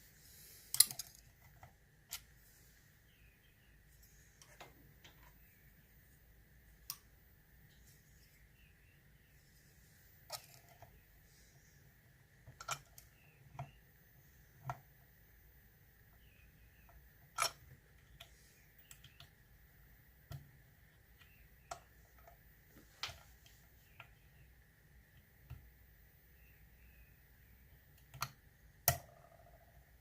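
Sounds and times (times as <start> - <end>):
lock pick metallic clicks: 0.7 - 1.2.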